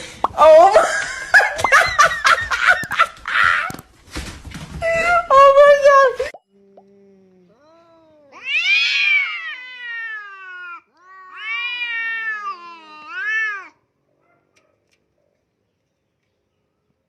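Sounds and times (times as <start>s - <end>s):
cat yowling meows: 7.5s - 13.8s.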